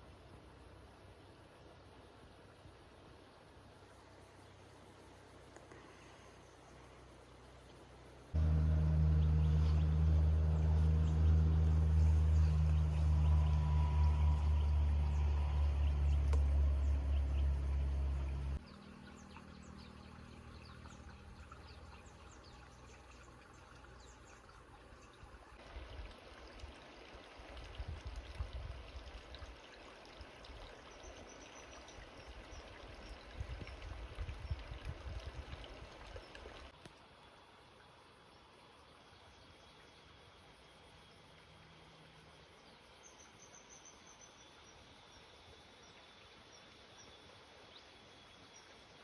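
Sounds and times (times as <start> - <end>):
water trickling and lapping: 0.0 - 49.0
motor humming: 8.4 - 18.6
low rumbles: 8.4 - 18.7.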